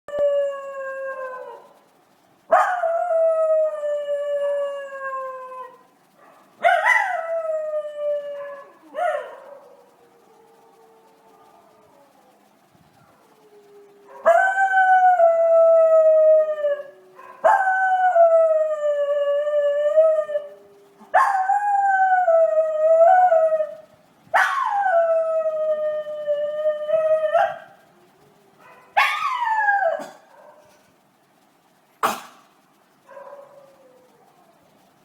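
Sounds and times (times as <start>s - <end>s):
dog howling: 6.6s - 23.8s, 24.4s - 30.6s.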